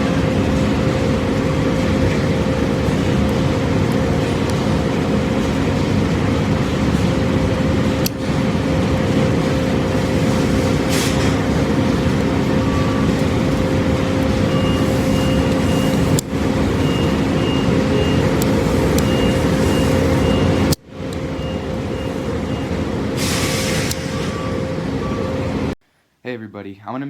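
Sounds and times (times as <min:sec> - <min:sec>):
mechanical hum: 0:00.0 - 0:26.9
short high-pitched beeps: 0:14.5 - 0:16.2.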